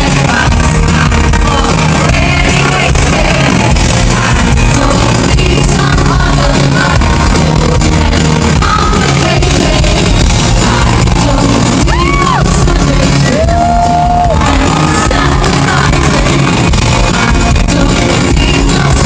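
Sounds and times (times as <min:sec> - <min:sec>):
live pop-rock music: 0:00.0 - 0:19.0
person singing: 0:00.0 - 0:19.0
fans shouting along: 0:10.4 - 0:19.0.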